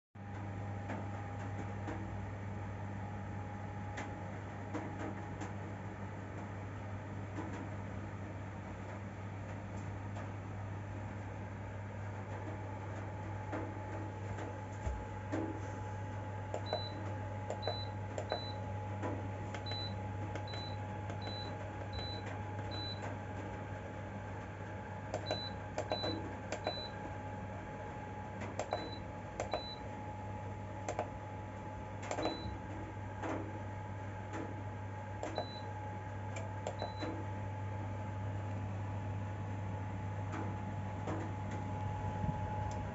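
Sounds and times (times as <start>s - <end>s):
fan heater humming: 0.2s - 42.9s
control button clicks: 35.2s - 35.6s.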